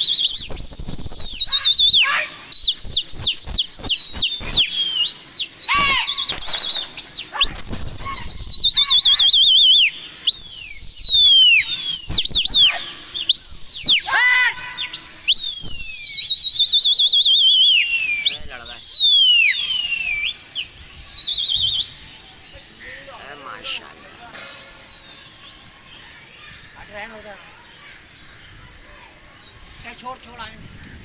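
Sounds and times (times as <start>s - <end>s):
person whistling loudly: 0.0s - 22.0s.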